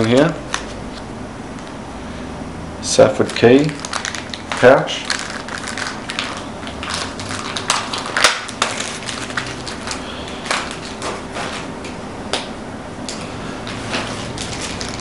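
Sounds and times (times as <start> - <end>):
pouch and packaging rustling: 3.2 - 11.7, 13.7 - 15.0.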